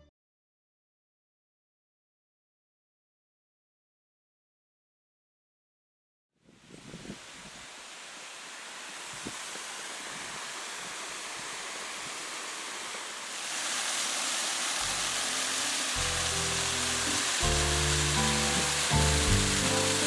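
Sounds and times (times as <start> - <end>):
waterfall rushing: 6.8 - 20.0
background music: 15.8 - 20.0.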